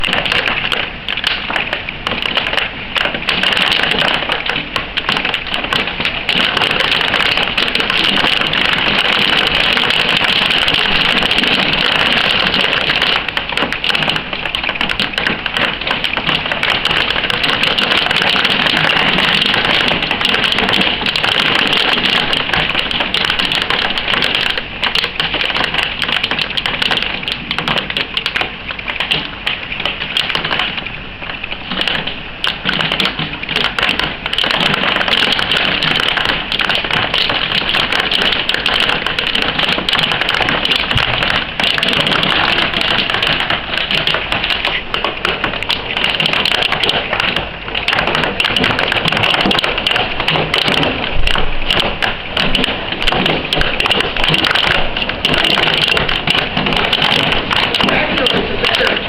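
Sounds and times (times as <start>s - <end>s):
hailstones pelting down: 0.0s - 59.0s.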